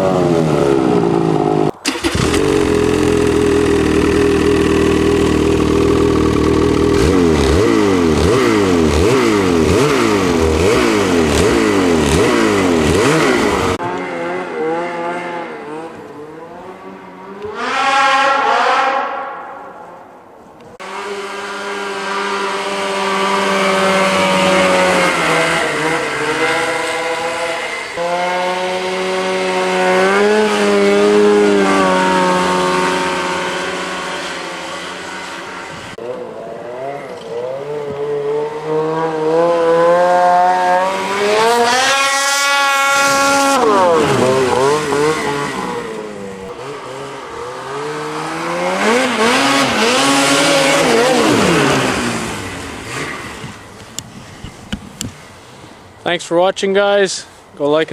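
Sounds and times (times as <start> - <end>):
snowmobile engine revving: 0.0 - 19.8, 20.8 - 54.0.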